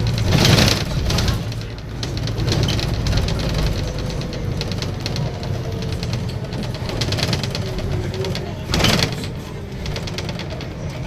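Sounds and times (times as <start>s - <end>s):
bus diesel engine rumbling: 0.0s - 11.0s.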